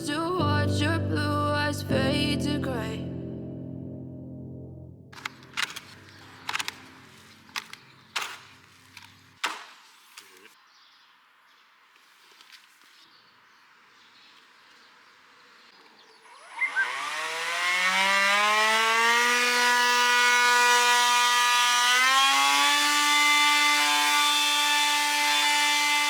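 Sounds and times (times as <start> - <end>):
electric blower motor whining: 5.2 - 9.6, 16.1 - 26.0
blower switch clicks: 5.2 - 10.3.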